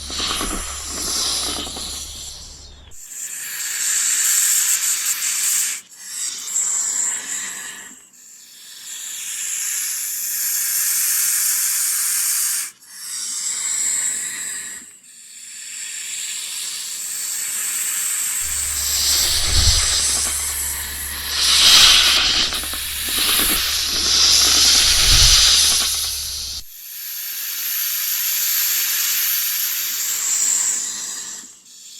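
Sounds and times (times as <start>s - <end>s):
low steady hum: 0.0s - 3.0s, 18.4s - 26.7s
snake hissing: 0.0s - 3.0s, 18.4s - 26.7s.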